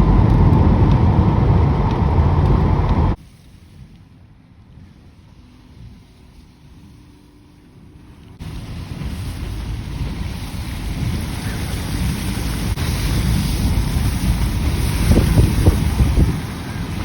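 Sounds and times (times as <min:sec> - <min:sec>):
wind buffeting microphone: 0:00.0 - 0:03.2, 0:08.4 - 0:17.0.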